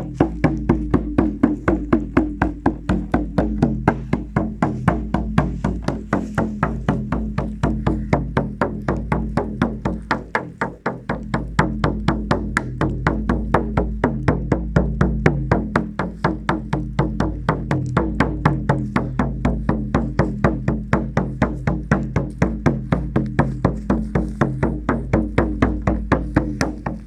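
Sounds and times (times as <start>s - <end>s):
drum beaten in fast rhythm: 0.0s - 27.0s
steady low tone: 0.0s - 27.0s.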